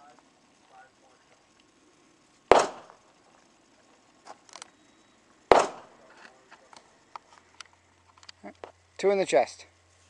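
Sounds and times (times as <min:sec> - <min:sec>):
pistol shots: 0:02.5 - 0:03.0, 0:05.5 - 0:06.0.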